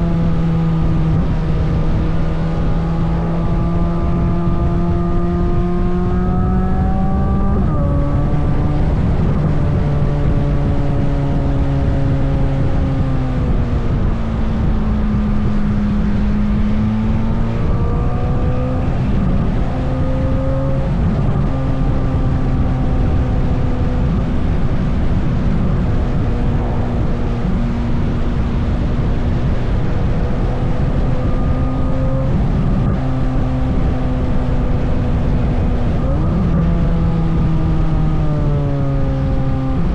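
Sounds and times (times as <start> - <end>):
car engine on trailing throttle: 0.0 - 39.9
road and wind noise: 0.0 - 39.9.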